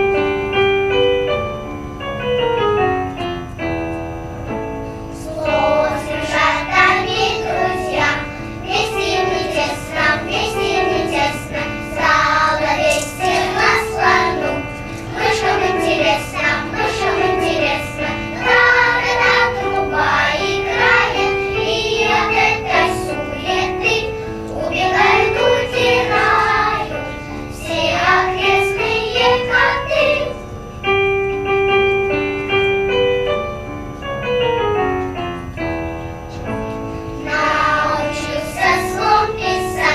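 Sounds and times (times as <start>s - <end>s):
children's choir singing: 0.0s - 0.6s, 5.0s - 30.6s, 36.9s - 39.9s
piano accompaniment: 0.0s - 39.9s.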